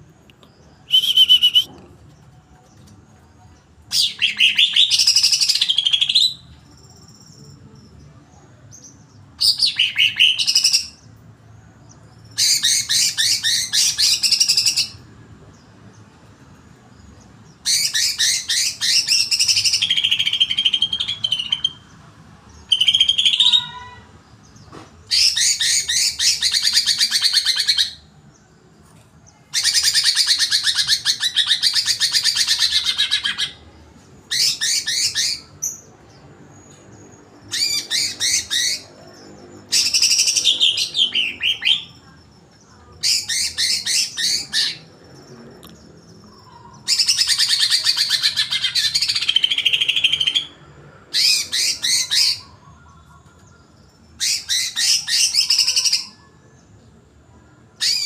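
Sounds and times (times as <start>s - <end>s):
bird chattering song: 0.8s - 2.3s, 29.4s - 33.7s, 36.6s - 56.3s.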